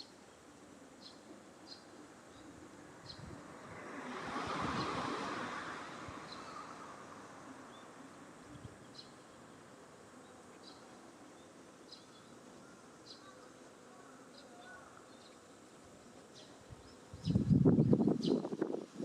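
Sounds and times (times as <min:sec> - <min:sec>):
vehicle passing: 0:02.9 - 0:08.0.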